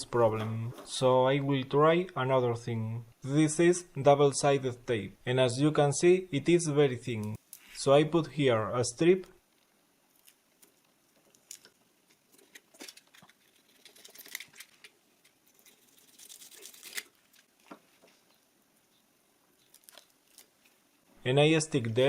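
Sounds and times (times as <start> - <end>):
tape clicks and rustles: 9.5 - 18.4, 19.6 - 20.8.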